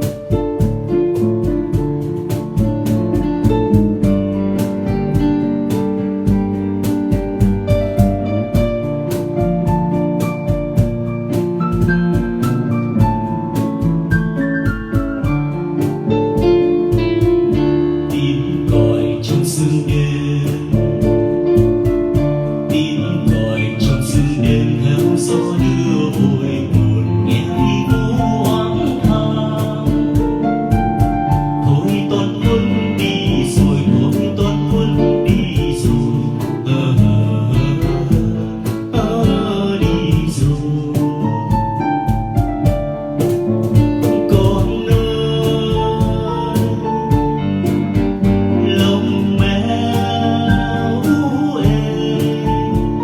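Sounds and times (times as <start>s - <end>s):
plucked guitar: 0.0s - 53.0s
steady beat: 0.0s - 53.0s.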